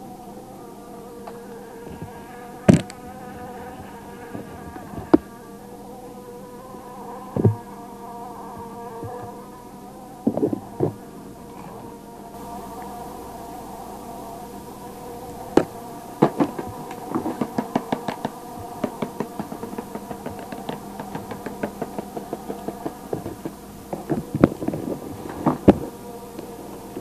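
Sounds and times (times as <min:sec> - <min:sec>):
faint steady hum: 0:00.0 - 0:27.0
sharp taps and clicks: 0:15.6 - 0:24.8.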